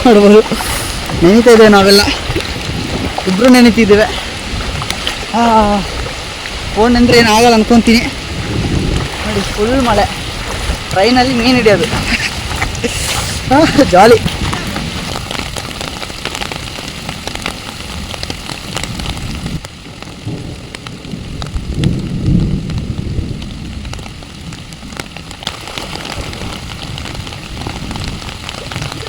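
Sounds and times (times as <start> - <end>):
low rumble: 0.0 - 15.8
heavy rain falling: 0.0 - 29.0
raindrops hitting close: 0.0 - 29.0.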